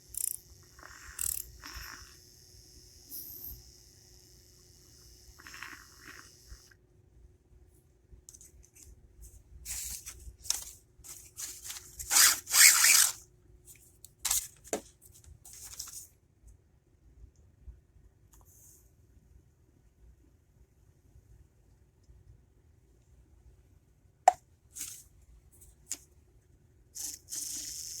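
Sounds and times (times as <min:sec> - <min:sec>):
rustling and scraping: 0:08.3 - 0:16.1.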